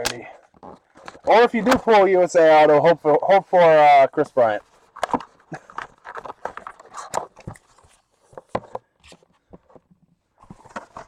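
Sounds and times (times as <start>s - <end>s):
card box packaging being opened: 4.9s - 9.8s.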